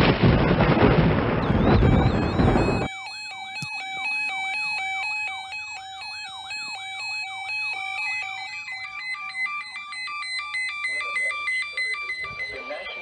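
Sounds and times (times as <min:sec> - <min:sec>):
loud noisy burst: 0:00.0 - 0:02.9
electronic siren alarm warbling: 0:01.4 - 0:13.0
short beeps: 0:01.4 - 0:13.0.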